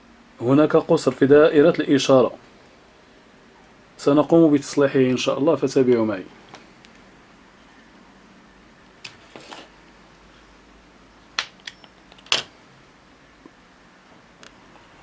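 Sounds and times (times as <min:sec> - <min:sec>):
objects clicking on a workbench: 0:09.0 - 0:09.7.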